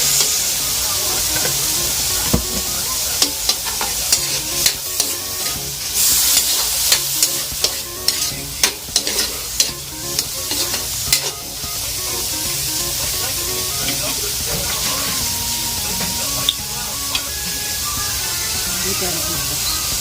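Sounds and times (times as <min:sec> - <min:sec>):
mussels sizzling in a pan: 0:00.0 - 0:20.0
utensil scraping a pan: 0:02.4 - 0:11.4.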